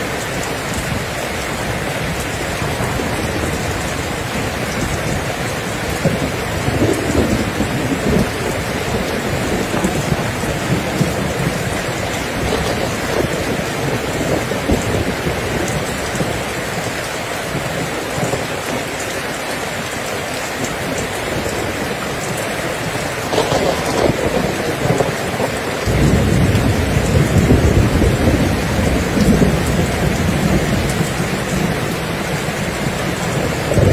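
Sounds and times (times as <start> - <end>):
heavy rain falling: 0.0 - 33.9
thunder rumbling: 0.0 - 33.9.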